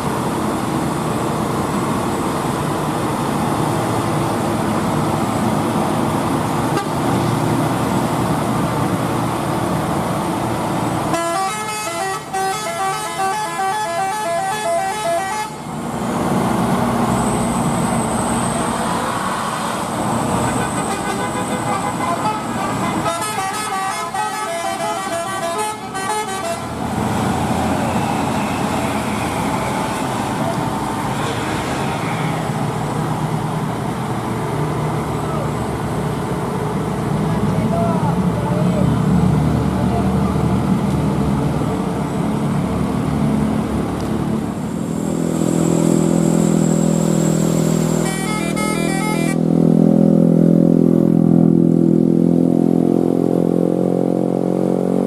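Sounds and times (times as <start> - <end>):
vehicle engines running: 0.0 - 55.0
multi-tone horn tune: 11.1 - 15.6, 20.5 - 26.7, 48.0 - 49.4.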